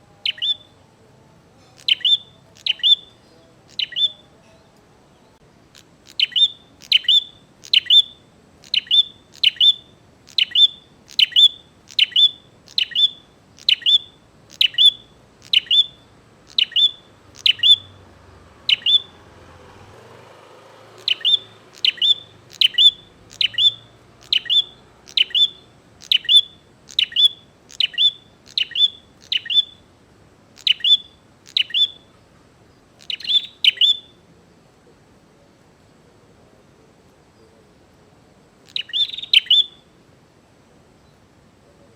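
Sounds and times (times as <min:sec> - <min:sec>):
bird sharp chirping calls: 0:00.2 - 0:00.8, 0:01.8 - 0:04.3, 0:05.7 - 0:19.4, 0:20.8 - 0:29.9, 0:30.5 - 0:34.2, 0:38.6 - 0:39.9.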